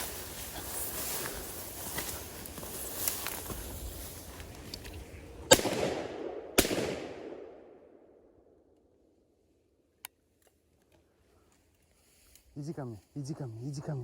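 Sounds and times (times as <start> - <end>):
rolling echo: 5.4 - 8.8
shotgun shots: 5.5 - 7.9.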